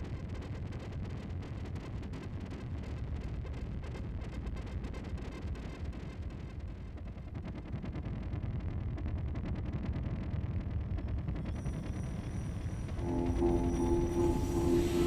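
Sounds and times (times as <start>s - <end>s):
deep electronic rumble: 13.0s - 15.0s.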